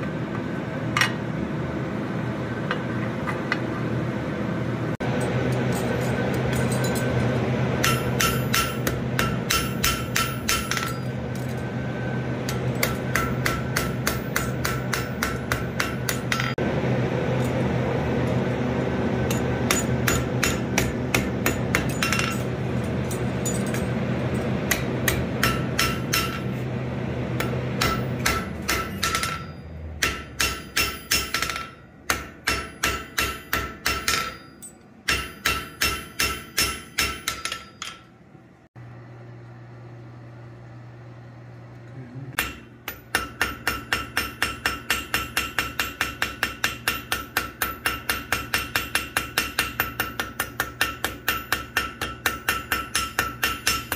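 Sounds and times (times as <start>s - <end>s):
steady low hum: 0.0s - 53.9s
anvil ringing: 5.0s - 11.7s, 12.4s - 16.6s, 19.2s - 26.6s, 27.4s - 38.2s, 42.4s - 53.9s
hammer striking steel on anvil: 5.0s - 16.6s, 19.2s - 38.2s, 42.4s - 53.9s.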